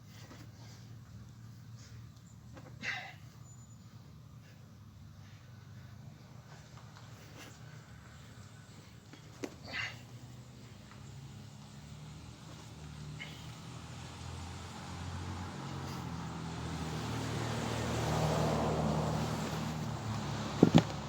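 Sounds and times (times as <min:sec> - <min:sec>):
vehicle passing by: 0:05.3 - 0:21.0.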